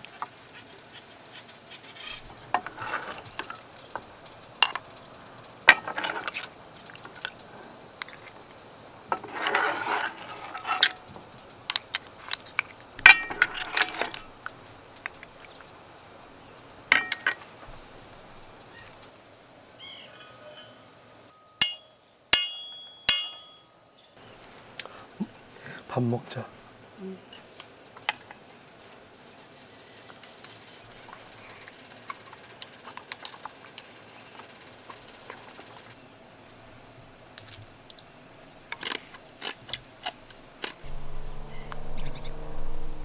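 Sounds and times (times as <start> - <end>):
dishes and utensils clinking: 16.9 - 17.4
ringing metallic strikes: 21.6 - 24.2, 40.9 - 43.0.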